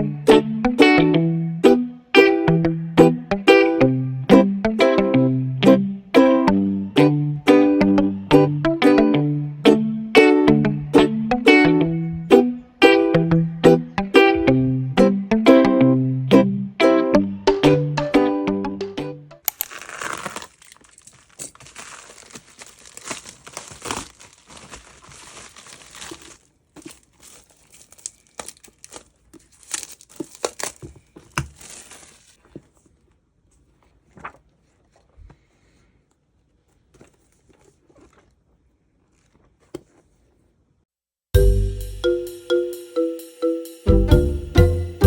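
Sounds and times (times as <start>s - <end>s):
background music: 0.0s - 19.5s, 41.4s - 45.0s
packaging crinkling and tearing: 19.5s - 32.4s
light clicks and handling: 26.8s - 35.3s.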